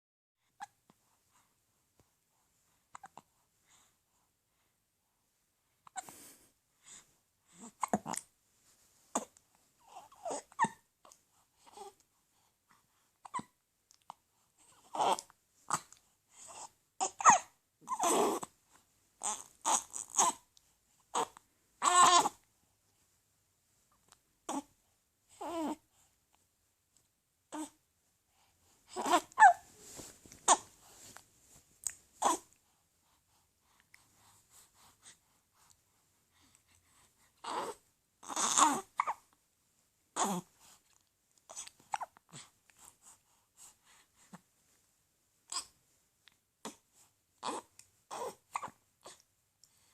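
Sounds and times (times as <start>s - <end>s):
baby whimpering: 9.1s - 10.9s, 14.7s - 18.5s, 19.2s - 20.5s, 21.1s - 22.4s, 25.4s - 25.8s, 28.9s - 29.7s, 30.4s - 30.7s, 32.2s - 32.5s, 37.4s - 39.2s, 40.2s - 40.5s, 47.4s - 49.2s
baby crying: 21.2s - 22.4s
baby hiccuping: 30.4s - 30.7s.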